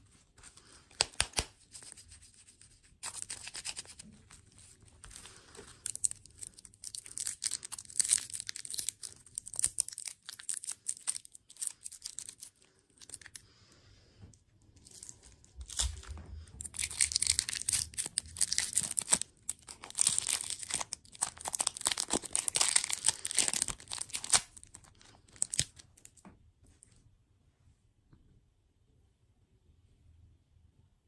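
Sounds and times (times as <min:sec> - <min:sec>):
plastic packaging crinkling: 0:03.0 - 0:13.4, 0:14.8 - 0:26.1.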